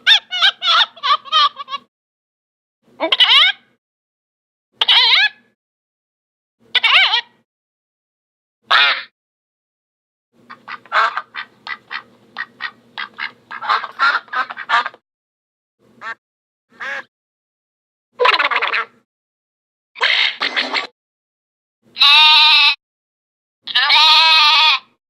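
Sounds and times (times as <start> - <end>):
duck quacking: 8.7 - 9.1, 10.5 - 15.0, 16.0 - 16.2, 16.8 - 17.1.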